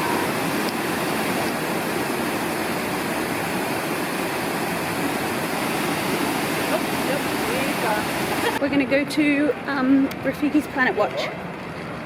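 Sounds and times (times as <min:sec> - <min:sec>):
waterfall rushing: 0:00.0 - 0:08.6.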